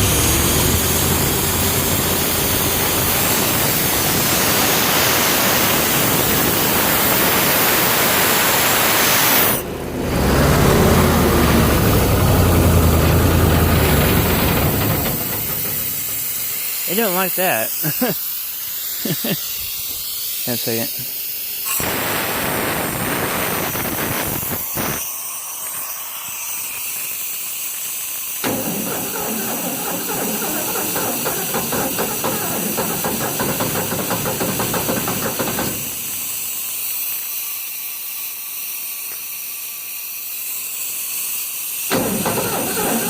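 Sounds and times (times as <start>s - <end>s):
engine running unevenly: 0.0s - 16.7s, 28.4s - 36.5s, 41.9s - 43.0s
air compressor hissing: 0.0s - 43.0s
person talking: 16.9s - 18.2s, 20.5s - 21.1s.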